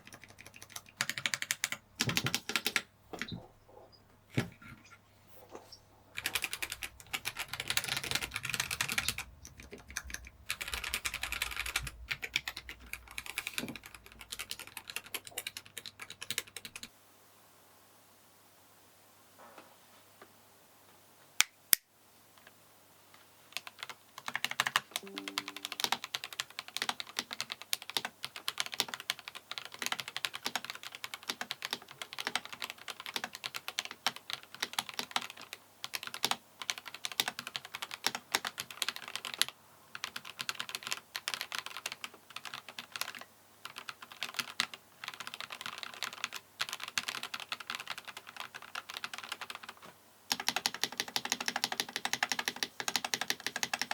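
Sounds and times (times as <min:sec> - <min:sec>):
rapid keyboard typing: 0:00.0 - 0:03.5, 0:06.2 - 0:16.9, 0:23.5 - 0:53.9.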